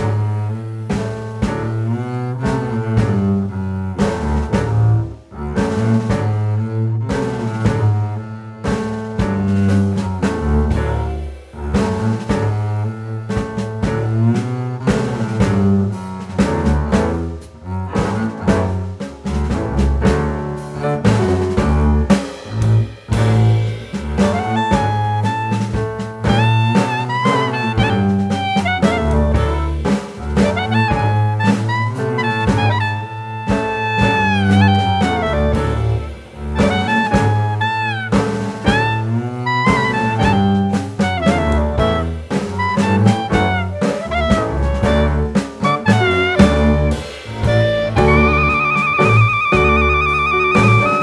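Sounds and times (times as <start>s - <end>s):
drums: 0.0s - 51.0s
jazz horn melody: 0.0s - 51.0s
music with bass and beat: 0.0s - 51.0s.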